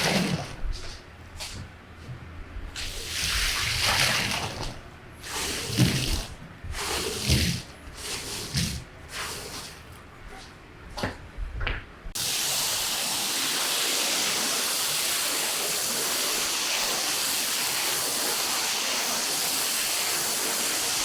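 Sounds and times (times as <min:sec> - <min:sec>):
water splashing and sloshing: 0:00.0 - 0:01.7, 0:02.7 - 0:10.5.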